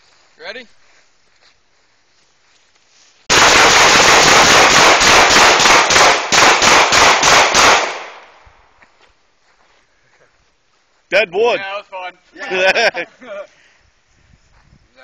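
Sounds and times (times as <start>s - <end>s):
gunshot echo: 3.3s - 8.5s
handgun shots: 4.2s - 8.2s.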